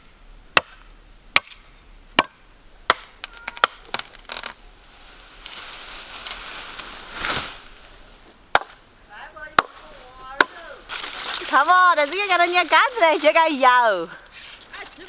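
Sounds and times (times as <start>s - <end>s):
blade chopping bamboo: 1.4s - 1.6s, 8.5s - 8.8s, 9.6s - 13.0s
rustling noise: 3.2s - 8.4s, 9.7s - 15.0s.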